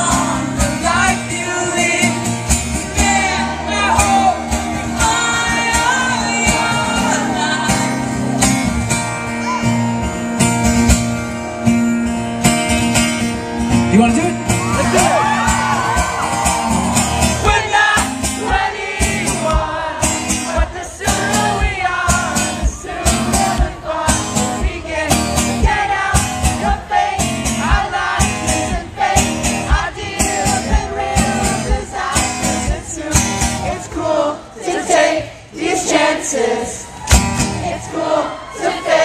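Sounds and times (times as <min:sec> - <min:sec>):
crowd voices singing along: 0:00.0 - 0:13.8, 0:14.5 - 0:39.0
loud rock band: 0:00.0 - 0:34.3
drums steady beat: 0:14.8 - 0:33.8.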